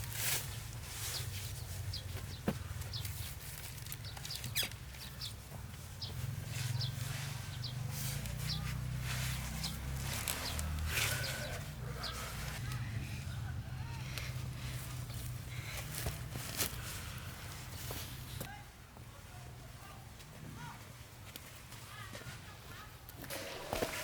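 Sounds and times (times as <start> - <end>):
birds peeping: 0.9 - 18.5.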